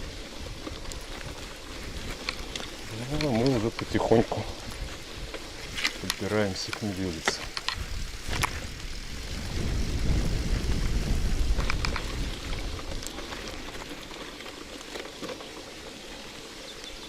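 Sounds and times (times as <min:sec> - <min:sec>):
bike clicks: 0:00.0 - 0:17.0
tyres on wet ground: 0:00.0 - 0:17.0
wind on microphone: 0:07.6 - 0:13.9.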